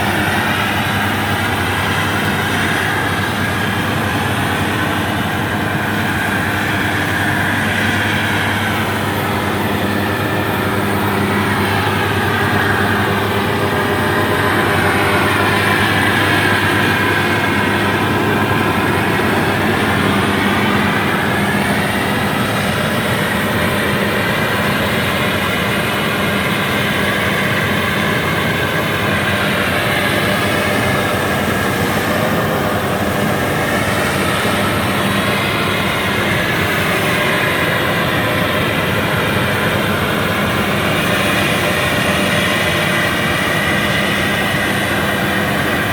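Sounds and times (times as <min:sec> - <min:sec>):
combine harvester droning: 0:00.0 - 0:45.9.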